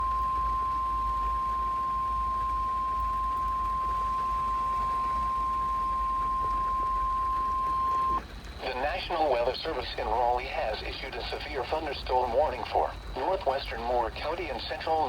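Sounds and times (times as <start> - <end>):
low hum: 0.0 - 8.2
faint radio hiss: 0.0 - 15.0
steady warning alarm tone: 0.0 - 15.0.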